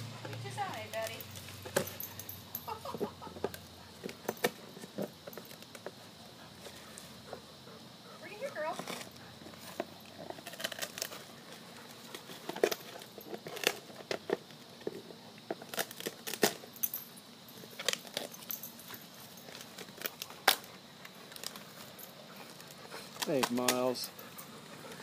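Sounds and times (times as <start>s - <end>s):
dog chewing palm frond: 8.8s - 16.6s, 17.6s - 25.0s.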